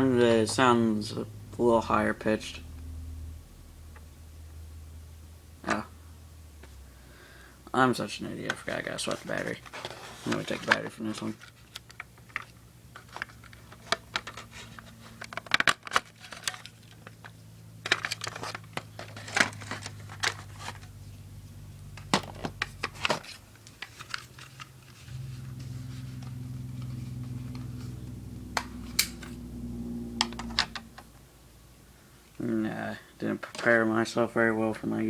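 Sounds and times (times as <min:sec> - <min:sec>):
plastic clicks and rattles: 0:09.7 - 0:20.9.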